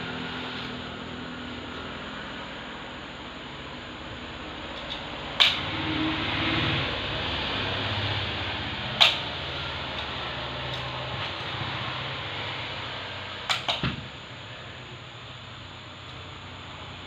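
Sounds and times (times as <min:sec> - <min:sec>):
steady low hum: 0:00.0 - 0:17.0
sharp click: 0:09.0 - 0:09.2.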